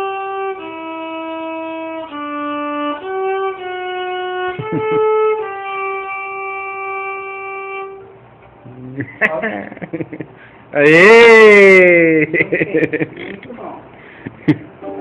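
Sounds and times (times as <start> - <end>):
violin slow melody: 0.0 - 8.3.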